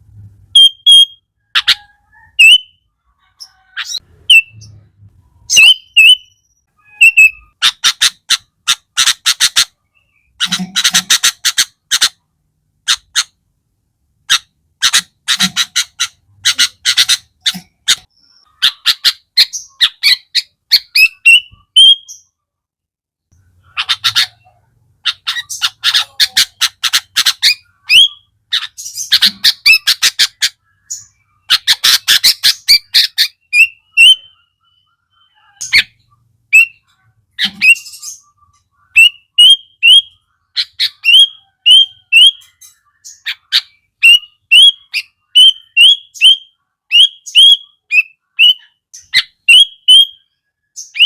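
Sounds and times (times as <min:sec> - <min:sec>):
bird whistling: 0:00.5 - 0:02.8, 0:03.8 - 0:04.8, 0:05.5 - 0:07.9, 0:18.2 - 0:22.2, 0:27.4 - 0:36.9, 0:37.6 - 0:51.0
bird harsh chattering: 0:00.6 - 0:04.8, 0:05.5 - 0:13.4, 0:14.2 - 0:22.3, 0:23.4 - 0:51.0.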